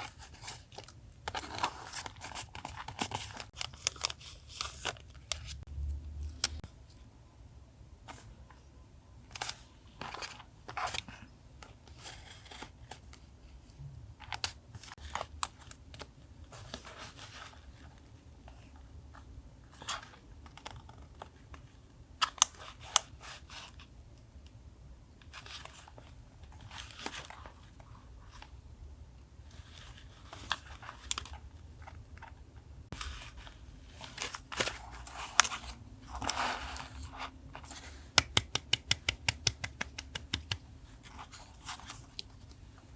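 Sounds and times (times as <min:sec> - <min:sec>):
paper rustling and tearing: 0:00.0 - 0:05.6.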